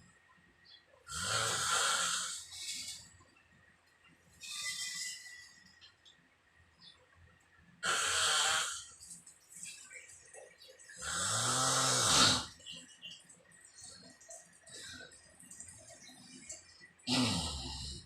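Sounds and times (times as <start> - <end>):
person snoring: 1.1 - 2.5, 7.8 - 8.9, 11.0 - 12.5, 17.1 - 18.0.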